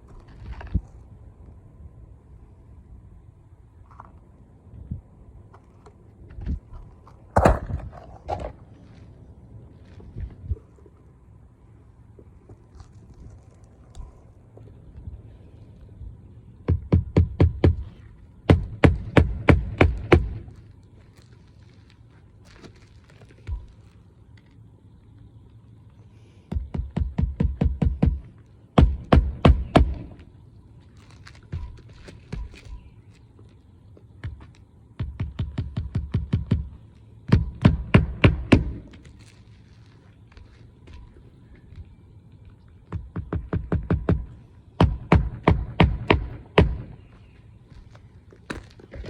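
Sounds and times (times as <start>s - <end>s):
hammer driving nails into shingle: 16.7s - 20.6s, 26.5s - 30.2s, 35.0s - 39.0s, 42.9s - 47.0s
hammer tapping nails: 35.0s - 38.8s.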